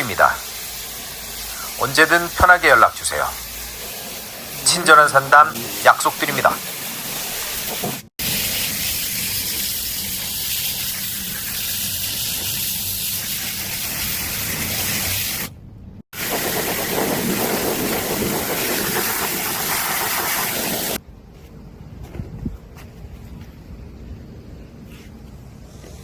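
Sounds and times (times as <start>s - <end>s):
high-pressure water spray hissing: 0.0s - 15.5s, 16.2s - 21.0s.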